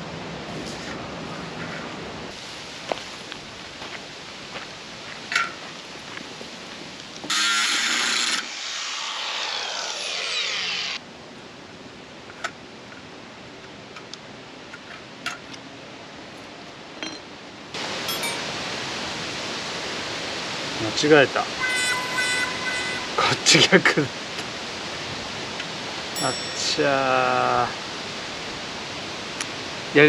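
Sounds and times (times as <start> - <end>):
steady hiss: 0.0 - 16.9, 17.6 - 30.0
power tool motor winding down: 7.3 - 11.0.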